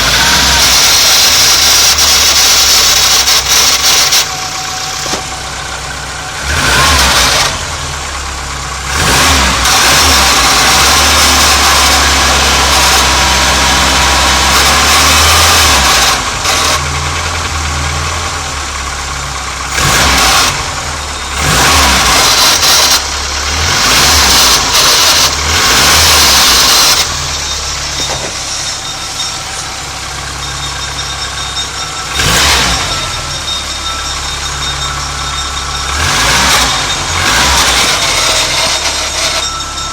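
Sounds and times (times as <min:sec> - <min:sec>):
car engine idling: 0:00.0 - 0:39.9
gearbox noise: 0:36.2 - 0:39.6.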